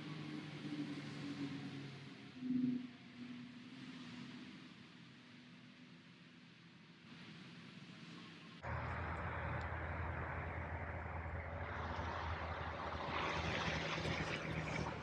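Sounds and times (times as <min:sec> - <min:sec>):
highway traffic rushing: 0:08.6 - 0:15.0.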